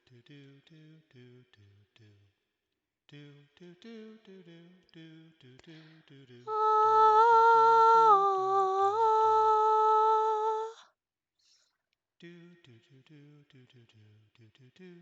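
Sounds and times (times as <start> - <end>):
person humming a long note: 6.5 - 10.7.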